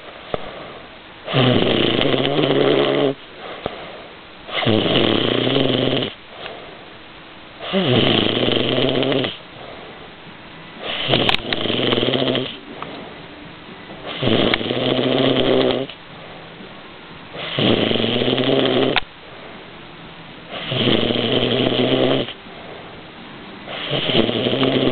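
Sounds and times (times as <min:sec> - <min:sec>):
quiet breathing: 0:00.0 - 0:01.4, 0:02.0 - 0:04.6, 0:06.1 - 0:07.0, 0:08.8 - 0:10.2, 0:10.8 - 0:19.8, 0:20.5 - 0:24.9
person snoring: 0:01.3 - 0:03.2, 0:04.5 - 0:06.2, 0:07.6 - 0:09.4, 0:10.8 - 0:12.6, 0:14.1 - 0:16.0, 0:17.4 - 0:19.0, 0:20.5 - 0:22.4, 0:23.7 - 0:24.9.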